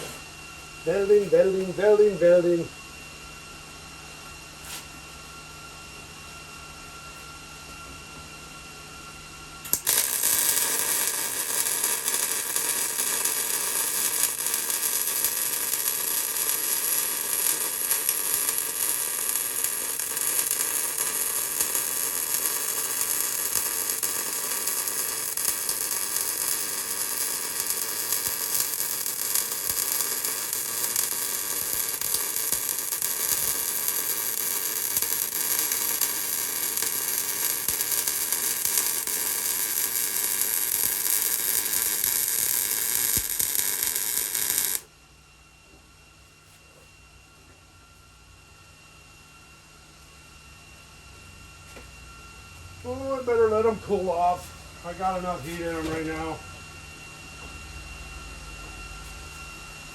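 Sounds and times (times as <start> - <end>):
welder low hum: 0.0 - 3.5, 4.1 - 45.0, 50.9 - 59.9
welding arc crackling: 9.6 - 44.9.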